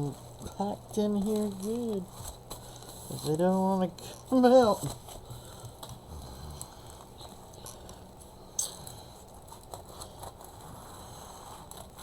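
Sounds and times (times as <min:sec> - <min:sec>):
paper and cardboard rustling: 0:00.0 - 0:06.0.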